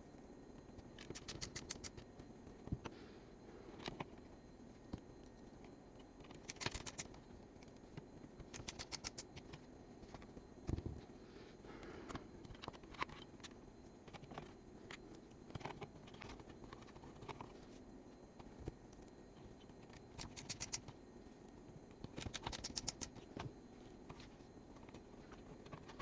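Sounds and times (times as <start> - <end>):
rapid clicks: 0.8 - 2.3, 6.2 - 9.6, 19.8 - 21.0, 22.0 - 23.2
hands clicking and tapping parts: 7.7 - 10.8, 19.8 - 21.0, 22.0 - 23.5.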